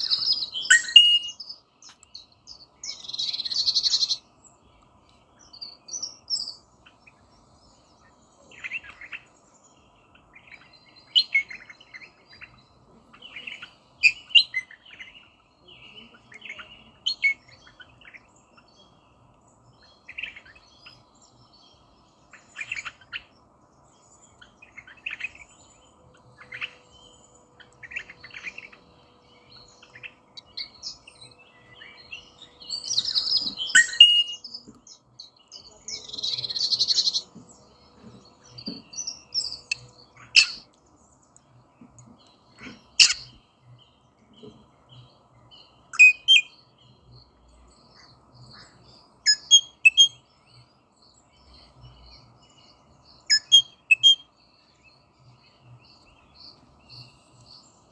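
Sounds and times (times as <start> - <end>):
rosella chattering calls: 0.0 - 1.5, 32.2 - 34.6, 38.6 - 40.7, 42.6 - 43.4, 45.9 - 46.5, 48.6 - 50.1, 53.3 - 54.2.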